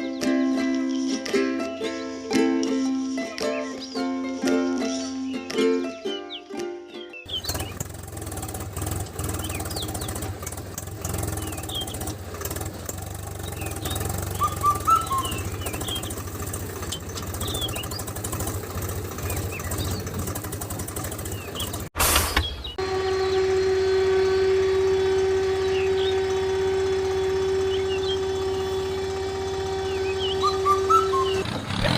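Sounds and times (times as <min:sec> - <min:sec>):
birds chirping: 0:00.0 - 0:31.9
small engine running: 0:07.3 - 0:22.2, 0:22.8 - 0:31.9
brief loud burst: 0:22.0 - 0:22.7.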